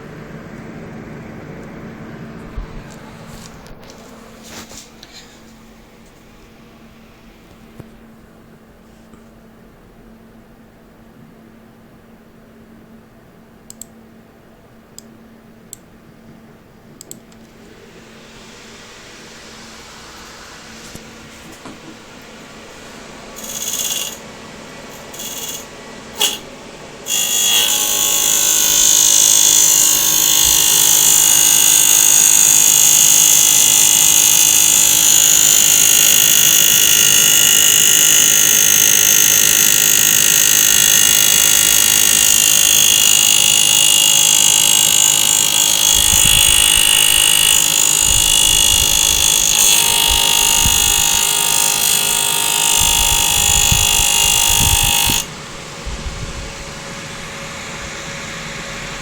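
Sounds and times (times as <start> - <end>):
graphics card fans whirring: 11.9 - 43.0.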